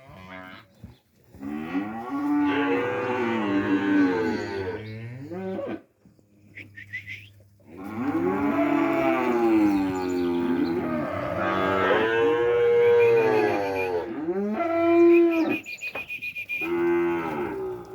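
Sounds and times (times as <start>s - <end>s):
calves mooing: 1.4s - 5.8s, 7.8s - 15.6s, 16.6s - 17.9s.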